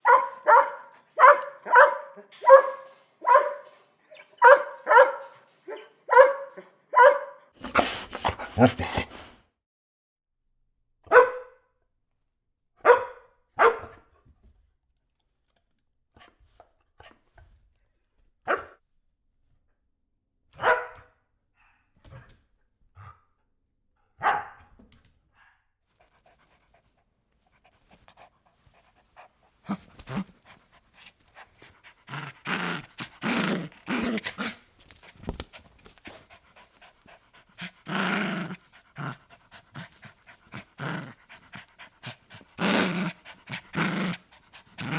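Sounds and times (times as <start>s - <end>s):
dog barking: 0.0s - 3.8s, 4.4s - 9.0s, 11.1s - 11.6s, 12.8s - 14.0s, 18.5s - 18.8s, 20.6s - 21.1s, 24.2s - 24.7s.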